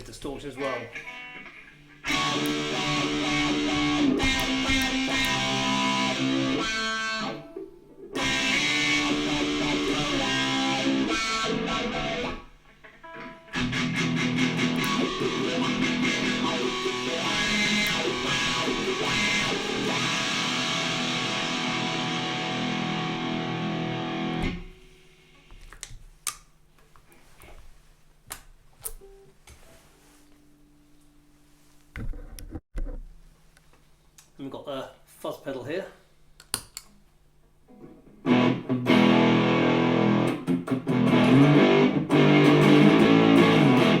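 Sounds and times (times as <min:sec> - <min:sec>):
distorted electric guitar with wah: 0:00.9 - 0:24.8, 0:37.9 - 0:44.0.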